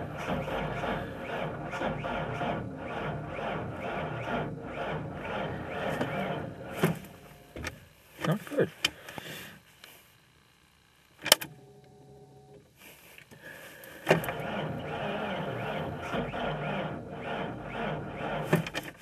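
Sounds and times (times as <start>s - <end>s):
starter cranking engine: 0.0s - 7.2s, 13.8s - 19.0s
faint steady hum: 0.0s - 18.8s.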